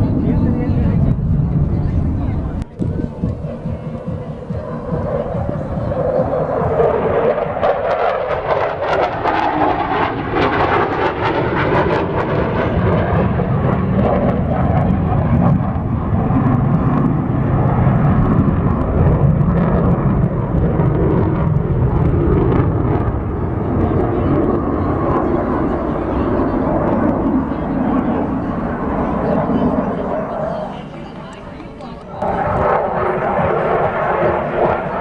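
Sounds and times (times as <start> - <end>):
aircraft flying past: 0.0 - 35.0.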